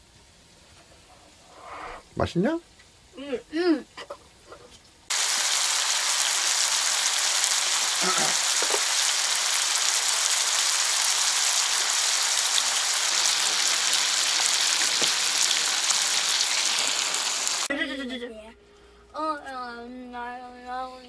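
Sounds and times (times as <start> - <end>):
steady hiss: 5.1 - 17.7.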